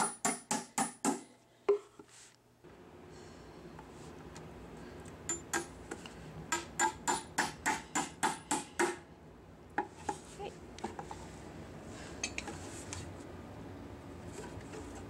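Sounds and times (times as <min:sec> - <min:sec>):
hammer hitting nails into wood: 0:00.0 - 0:01.3, 0:06.5 - 0:09.0.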